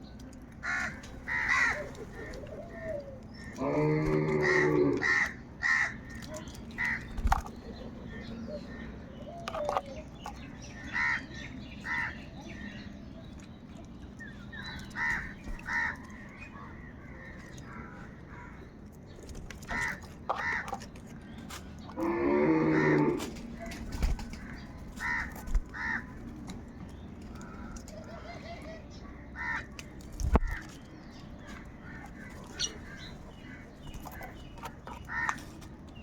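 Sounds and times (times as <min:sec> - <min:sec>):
crows cawing: 0:00.6 - 0:07.1, 0:10.8 - 0:12.2, 0:15.0 - 0:16.2, 0:17.2 - 0:18.7, 0:19.7 - 0:20.8, 0:22.0 - 0:26.2, 0:29.4 - 0:29.8, 0:31.5 - 0:35.5.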